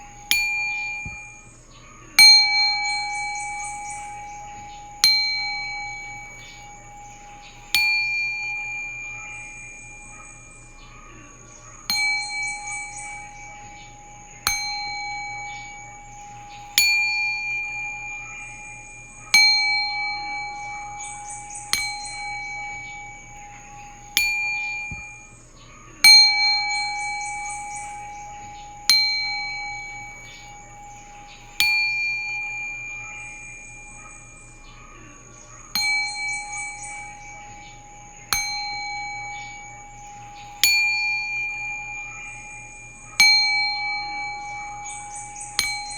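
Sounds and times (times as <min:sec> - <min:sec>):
singing bowl ringing: 0:00.0 - 0:45.9.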